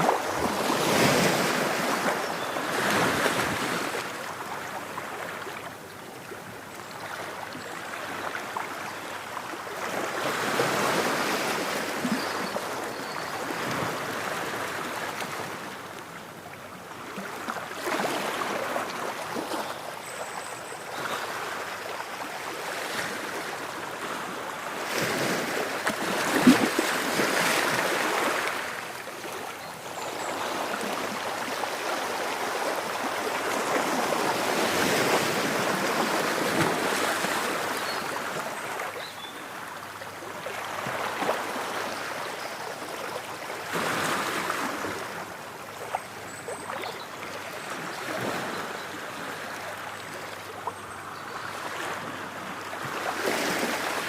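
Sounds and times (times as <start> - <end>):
wave splash: 0.0 - 4.1, 24.8 - 29.4, 30.2 - 38.5
ocean waves washing onto shore: 0.0 - 5.8, 21.0 - 45.8.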